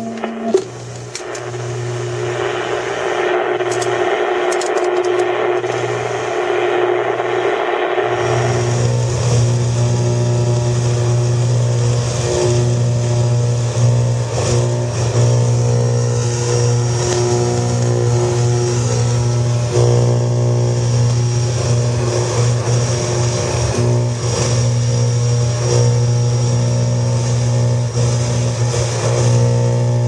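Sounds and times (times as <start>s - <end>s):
radio hiss: 0.0s - 11.3s
low buzzing radio drone: 0.0s - 30.0s.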